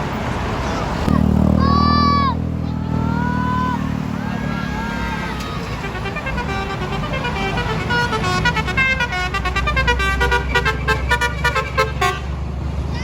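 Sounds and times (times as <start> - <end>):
bus engine rumble: 0.0 - 13.0
musical bus horn tune: 5.2 - 12.4.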